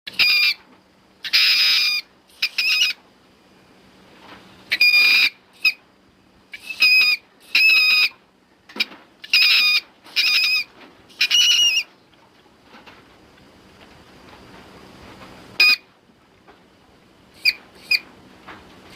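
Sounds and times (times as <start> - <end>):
high-pitched animal squeaks: 0.1 - 0.6, 1.2 - 3.0, 4.7 - 5.8, 6.5 - 8.2, 8.8 - 11.9, 15.6 - 15.9, 17.4 - 18.0.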